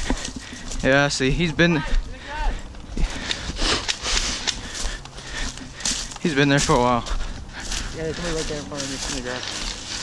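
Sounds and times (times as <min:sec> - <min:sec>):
rustling: 0:07.4 - 0:10.0.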